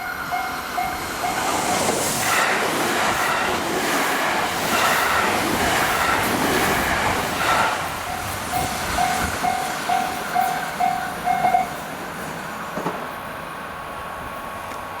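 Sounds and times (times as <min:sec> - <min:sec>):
level-crossing warning bell: 0:00.0 - 0:01.7, 0:07.9 - 0:11.8
train rolling past: 0:00.0 - 0:15.0.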